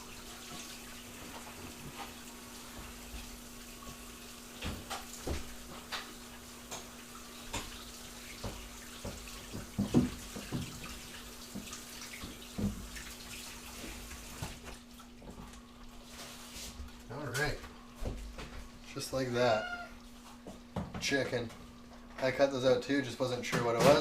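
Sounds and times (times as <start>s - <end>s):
kitchen tap running: 0.0s - 24.0s
knocks and taps: 8.4s - 10.8s.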